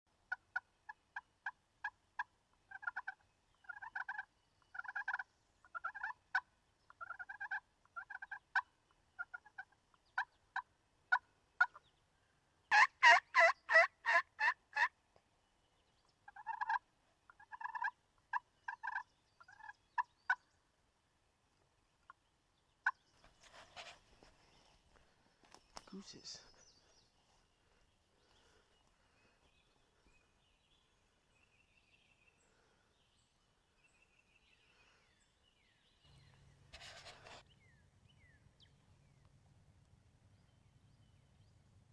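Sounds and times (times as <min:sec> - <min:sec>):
turkey yelps and clucks: 0:00.3 - 0:11.8, 0:12.7 - 0:14.9, 0:16.3 - 0:20.4.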